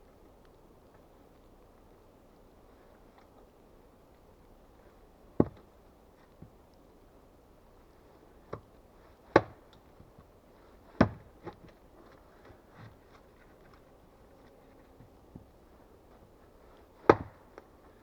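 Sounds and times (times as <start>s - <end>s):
axe chopping wood: 9.3s - 9.7s, 10.9s - 11.6s, 17.0s - 17.5s.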